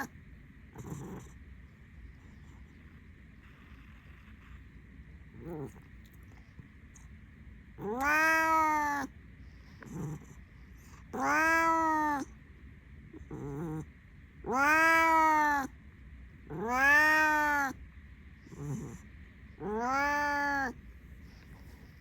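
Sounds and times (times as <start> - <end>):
cat chirping calls: 7.8 - 9.1, 11.1 - 12.3, 14.4 - 15.7, 16.5 - 17.8, 19.6 - 20.8
cat meowing: 7.8 - 9.1, 11.1 - 12.3, 14.4 - 15.7, 16.5 - 17.8, 19.6 - 20.8.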